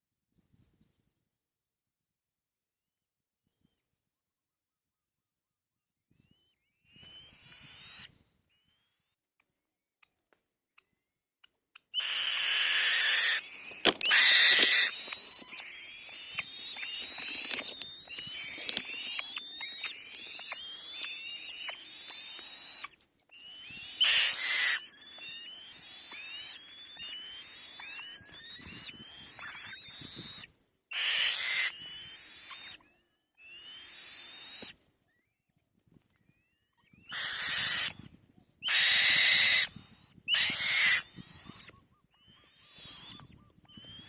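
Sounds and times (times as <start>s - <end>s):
nestling birds squeaky calls: 11.8s - 34.8s, 36.7s - 44.0s.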